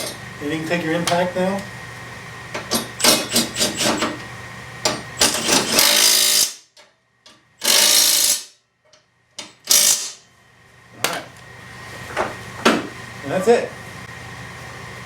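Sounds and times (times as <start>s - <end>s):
impact wrench bursts: 5.2s - 6.7s, 7.6s - 8.6s, 9.6s - 10.2s.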